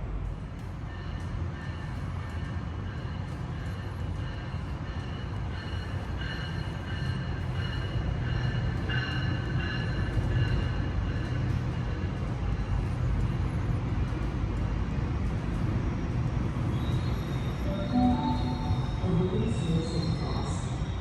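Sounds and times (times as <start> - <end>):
train rumbling by: 0.0 - 21.0
thin high tones: 17.7 - 19.7.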